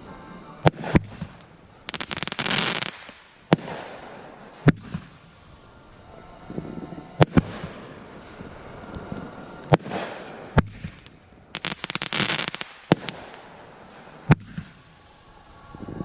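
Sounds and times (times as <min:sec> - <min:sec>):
rapid crackling pops: 0:00.6 - 0:04.0, 0:09.7 - 0:13.5
firework bangs: 0:00.6 - 0:05.4, 0:07.2 - 0:08.4, 0:09.7 - 0:15.0.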